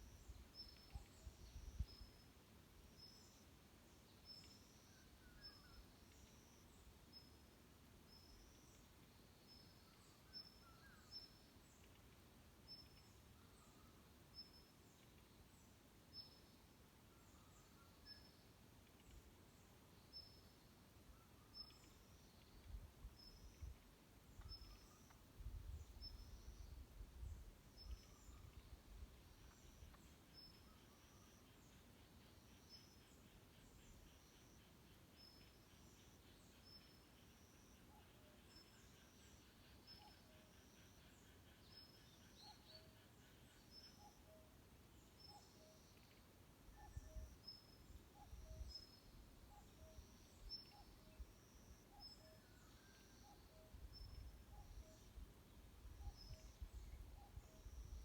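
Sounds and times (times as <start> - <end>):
wind rumble on microphone: 25.4 - 28.9.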